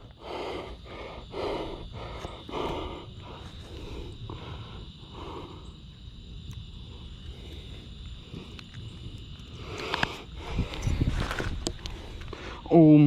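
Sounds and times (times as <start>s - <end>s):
person breathing hard: 0.0s - 5.9s, 9.5s - 12.7s.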